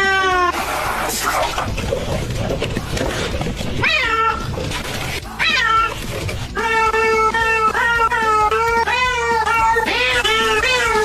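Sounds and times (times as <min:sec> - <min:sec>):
cat meowing: 0:00.0 - 0:00.6, 0:03.8 - 0:04.6, 0:05.4 - 0:06.0, 0:06.6 - 0:11.0
music: 0:00.0 - 0:11.0.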